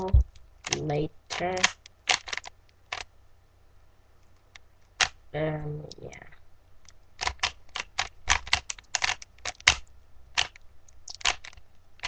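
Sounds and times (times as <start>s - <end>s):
plastic puzzle cube clicking: 0.2s - 3.1s, 6.8s - 11.6s.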